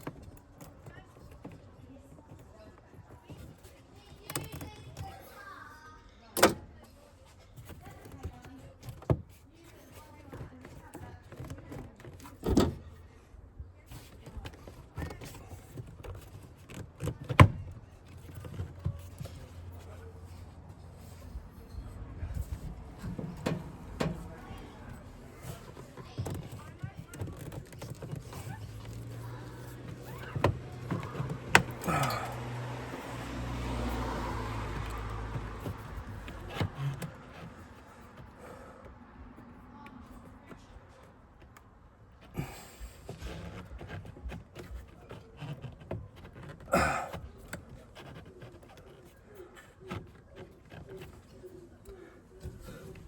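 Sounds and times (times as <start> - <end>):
plastic and metal parts clicking: 0.0 - 5.1, 22.5 - 32.4.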